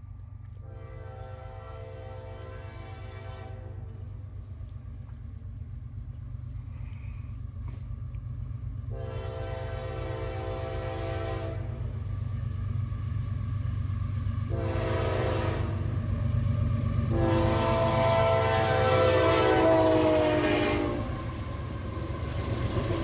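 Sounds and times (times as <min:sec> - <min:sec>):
diesel engine rumble: 0:00.0 - 0:20.2
locomotive air horn blasts: 0:00.7 - 0:04.0, 0:08.9 - 0:12.0, 0:14.5 - 0:16.3, 0:17.0 - 0:21.3.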